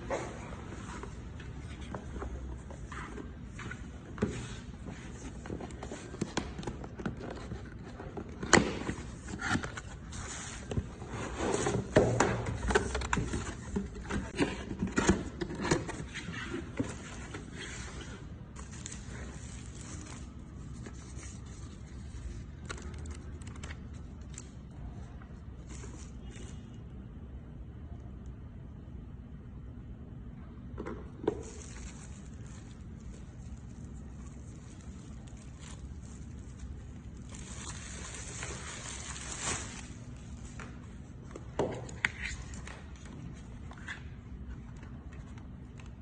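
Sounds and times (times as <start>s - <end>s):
low steady background noise: 0.0s - 46.0s.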